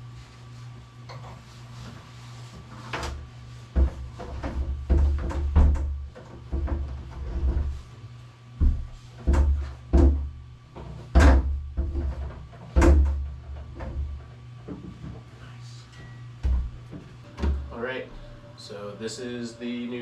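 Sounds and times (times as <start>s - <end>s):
wooden knocks and thumps: 3.7s - 7.8s, 8.6s - 15.2s.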